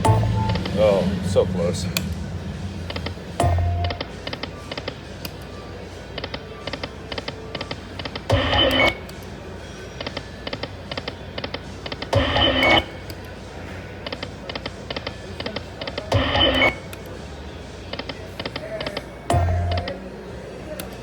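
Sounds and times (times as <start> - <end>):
slot machine reels clicking: 0.0 - 1.1, 1.9 - 9.3, 10.0 - 13.3, 14.1 - 17.1, 17.9 - 20.0
slot machine jingle: 0.0 - 5.0, 8.3 - 9.1, 12.2 - 13.1, 16.1 - 16.9, 19.3 - 20.0.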